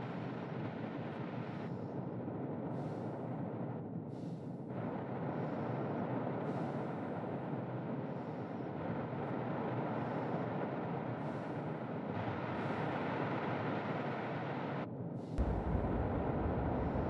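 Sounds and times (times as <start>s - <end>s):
wind and rain rumble: 8.6s - 17.0s.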